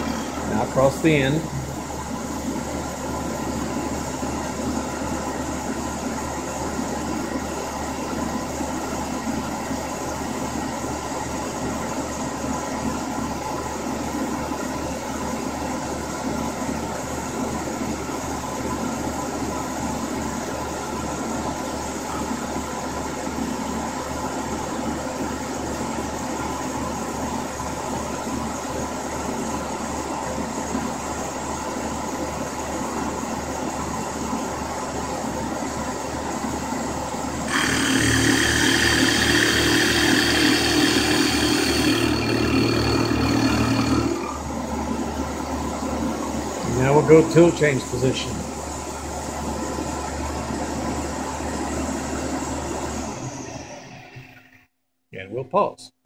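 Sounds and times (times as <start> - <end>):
milling machine cutting metal: 37.5 - 44.6.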